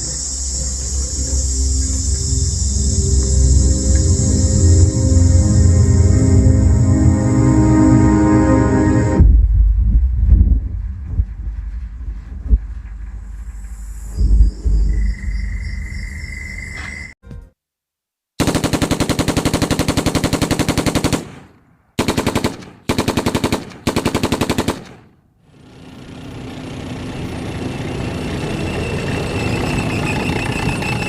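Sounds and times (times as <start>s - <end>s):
machine-gun fire: 18.4s - 25.2s.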